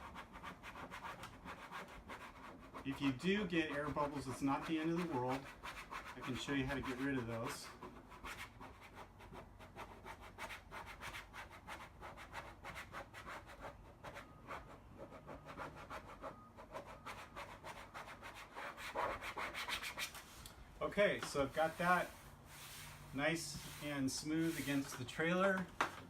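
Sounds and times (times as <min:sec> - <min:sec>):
plastic card scraping over decal: 0:21.6 - 0:25.6.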